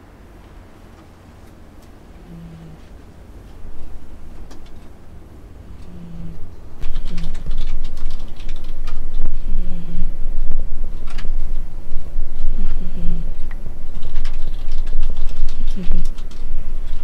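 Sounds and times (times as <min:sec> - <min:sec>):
steady low rumble: 0:00.0 - 0:17.0
cat snoring: 0:02.2 - 0:02.9, 0:05.9 - 0:07.3, 0:09.4 - 0:10.1, 0:12.4 - 0:13.4
clicks and rustles: 0:03.7 - 0:05.0, 0:06.8 - 0:09.4, 0:10.9 - 0:12.8, 0:13.4 - 0:17.0.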